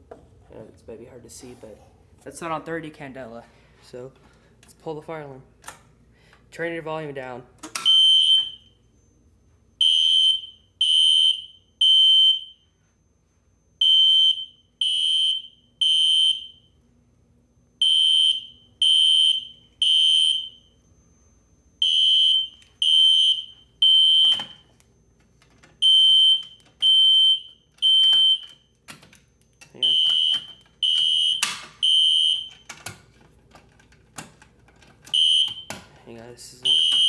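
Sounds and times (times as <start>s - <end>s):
high-pitched alarm horn beeps: 9.8s - 12.6s, 13.8s - 16.6s, 17.8s - 20.8s, 21.8s - 24.7s, 29.8s - 32.6s, 35.2s - 35.7s, 36.6s - 37.0s.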